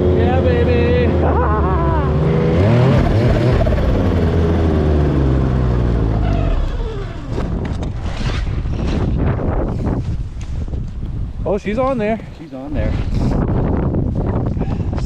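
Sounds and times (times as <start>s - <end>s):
vehicle engine running: 0.0s - 7.9s
wind buffeting microphone: 6.6s - 15.0s.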